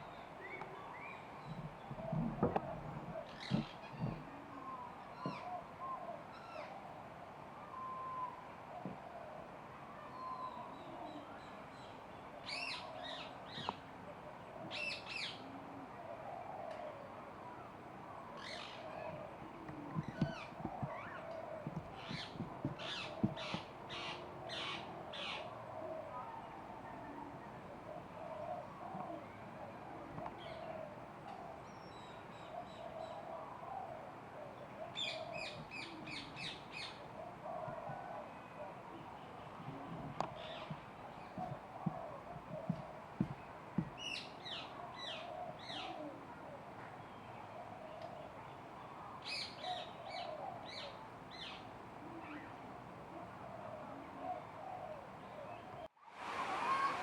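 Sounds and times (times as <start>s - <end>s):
birds calling: 0.0s - 6.7s, 18.4s - 27.2s, 38.9s - 46.2s
low background murmur: 13.4s - 31.6s.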